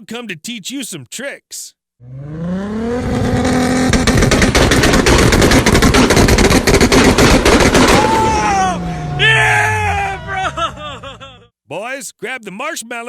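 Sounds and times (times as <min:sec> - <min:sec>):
car engine revving: 0:02.0 - 0:11.2
exhaust crackling and popping: 0:02.9 - 0:11.1.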